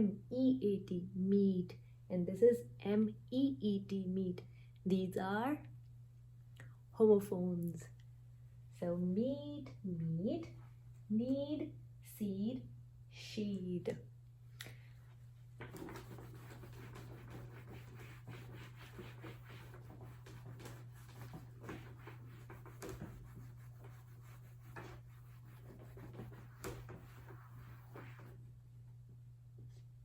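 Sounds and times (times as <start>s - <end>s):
steady low hum: 0.0s - 30.0s
pen scratching on paper: 15.7s - 28.4s.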